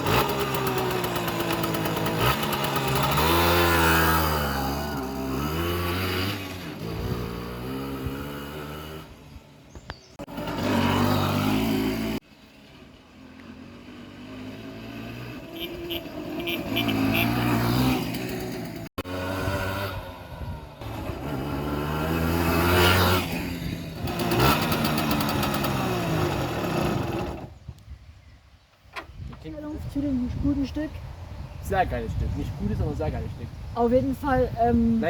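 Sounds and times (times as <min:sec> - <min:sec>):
moped engine revving: 0:00.0 - 0:09.5, 0:10.1 - 0:27.6.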